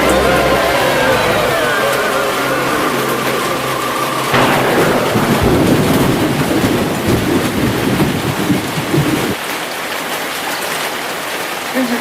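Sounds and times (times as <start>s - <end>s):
held musical note: 0.0s - 8.2s
thunderclap rumbling: 0.0s - 9.4s
heavy rain: 0.0s - 12.0s.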